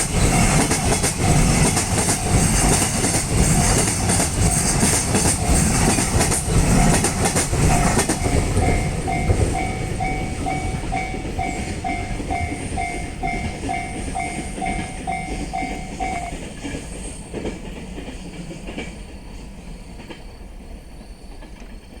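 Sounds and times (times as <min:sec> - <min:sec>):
crossing warning bell ringing: 0:00.0 - 0:17.2
train wheels clacking on rails: 0:00.0 - 0:22.0.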